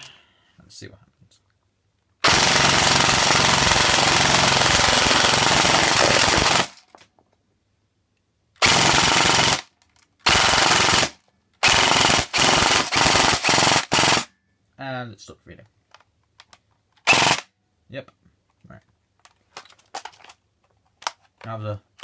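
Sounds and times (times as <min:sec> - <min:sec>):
airsoft rifle firing bursts: 0:02.2 - 0:06.8, 0:08.6 - 0:14.3, 0:17.1 - 0:17.5.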